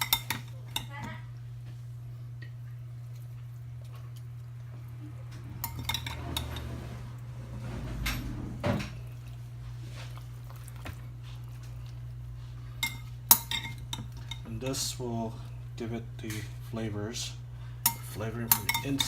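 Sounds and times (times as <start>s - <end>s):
steady low hum: 0.0s - 19.0s
spoon clinking against bowl: 17.9s - 19.0s.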